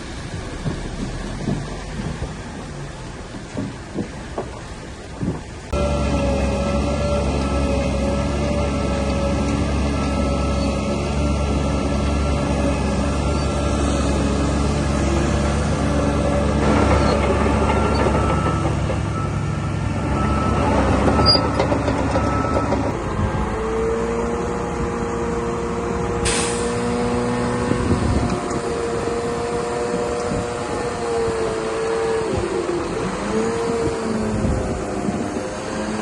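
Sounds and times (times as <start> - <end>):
bulldozer diesel engine: 0.0 - 36.0
short hiss: 26.2 - 26.8.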